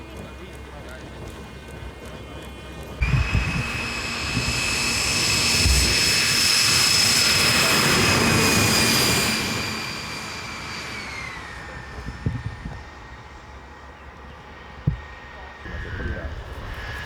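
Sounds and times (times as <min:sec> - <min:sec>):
jet turbine whine: 0:00.0 - 0:17.0
rushing jet noise: 0:03.0 - 0:13.8.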